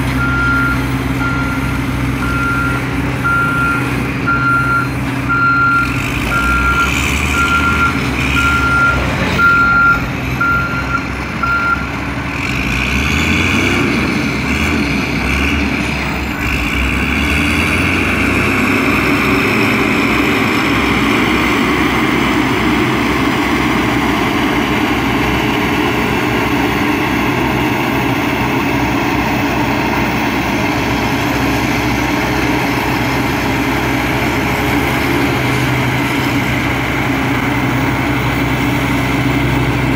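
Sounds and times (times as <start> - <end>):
diesel engine running: 0.0 - 39.9
reversing alarm beeping: 0.2 - 12.0.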